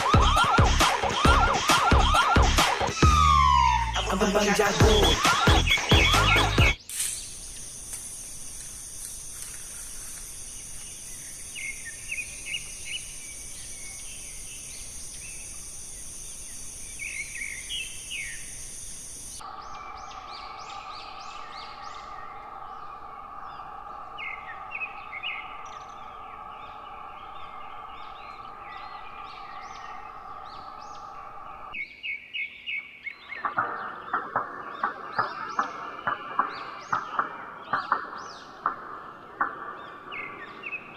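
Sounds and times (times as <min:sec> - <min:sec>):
high-pitched drone: 0:00.0 - 0:06.8, 0:19.4 - 0:31.8
repeated sharp bird calls: 0:00.0 - 0:07.7, 0:09.4 - 0:40.9
birds chirping: 0:00.0 - 0:40.9.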